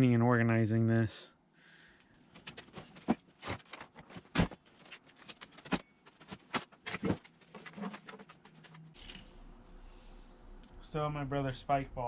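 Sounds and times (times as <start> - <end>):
knocks and clatter of items: 2.3 - 9.2.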